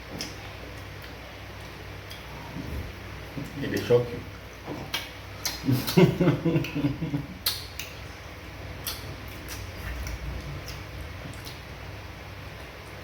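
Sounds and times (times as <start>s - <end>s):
eating clicks and lip smacks: 4.7s - 11.8s.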